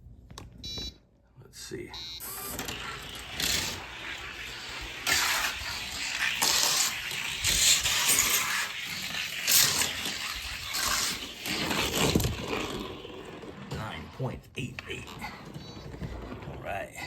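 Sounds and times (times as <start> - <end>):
toy car wheels rolling on track: 2.3 - 13.6.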